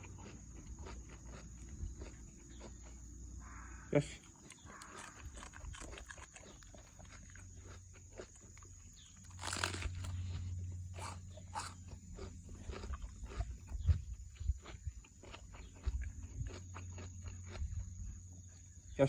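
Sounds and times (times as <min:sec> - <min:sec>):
dog chewing cabbage: 0:04.3 - 0:18.4.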